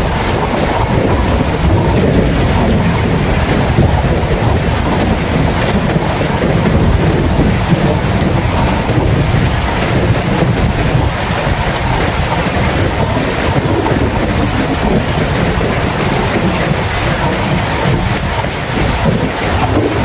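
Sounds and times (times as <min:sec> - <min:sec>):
deep continuous rumble: 0:00.0 - 0:20.0
heavy rain falling: 0:00.0 - 0:20.0.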